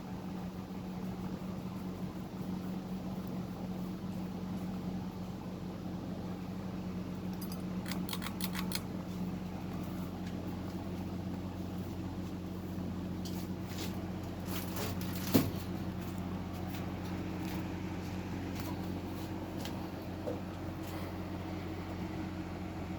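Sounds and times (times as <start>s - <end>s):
ceiling fan motor humming: 0.0s - 22.9s.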